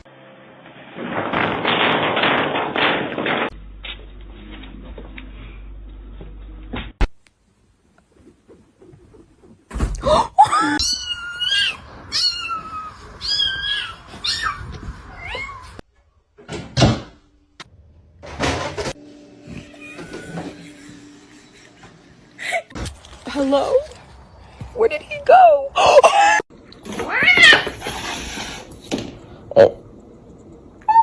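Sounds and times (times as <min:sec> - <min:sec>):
cat meowing: 0:10.7 - 0:15.8, 0:27.0 - 0:27.7.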